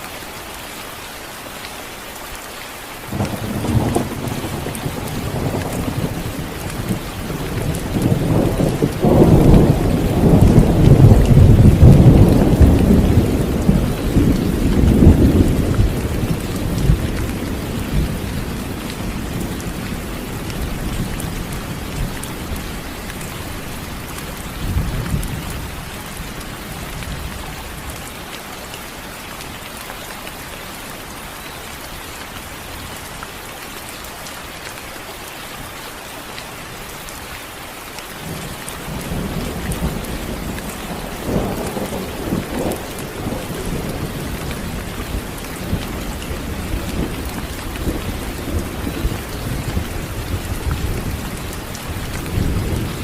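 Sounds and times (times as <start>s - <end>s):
steady rain: 0.0s - 53.0s
thunder rumbling: 3.1s - 27.9s, 38.2s - 53.0s.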